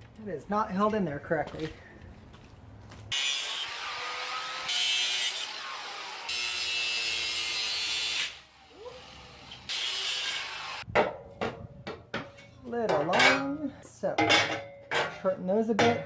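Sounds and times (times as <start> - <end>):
power tool cutting steel: 3.1 - 10.8.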